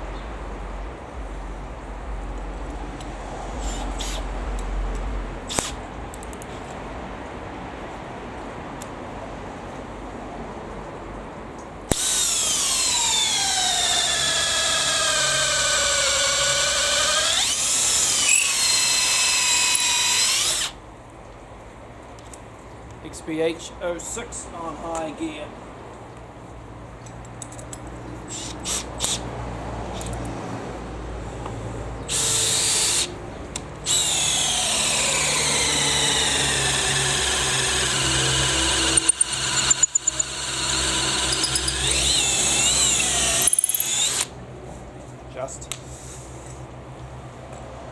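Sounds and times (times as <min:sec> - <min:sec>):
cordless drill motor whine: 0:03.6 - 0:04.2, 0:11.9 - 0:20.8, 0:32.1 - 0:33.1, 0:33.8 - 0:44.3.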